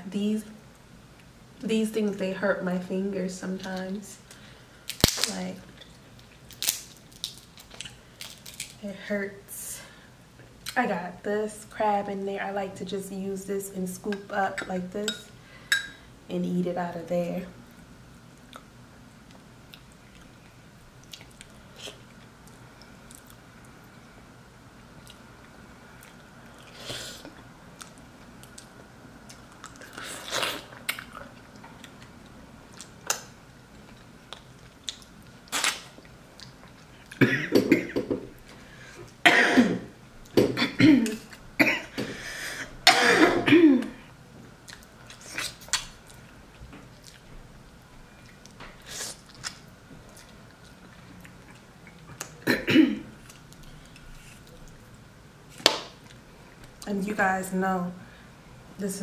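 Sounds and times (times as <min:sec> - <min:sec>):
eating and mouth sounds: 0:17.7 - 0:23.8, 0:24.8 - 0:37.3, 0:44.6 - 0:47.4, 0:48.1 - 0:52.4
woman coughing: 0:37.2 - 0:38.0, 0:39.2 - 0:39.9, 0:40.5 - 0:42.0, 0:42.8 - 0:44.0, 0:52.4 - 0:53.1.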